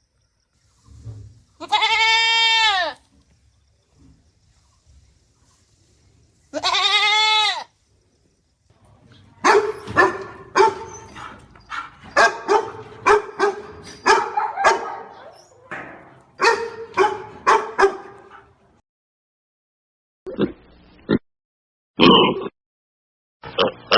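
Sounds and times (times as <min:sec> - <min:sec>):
dog barking: 0:09.4 - 0:15.8, 0:16.4 - 0:18.8
drawn-out animal call: 0:09.4 - 0:18.5.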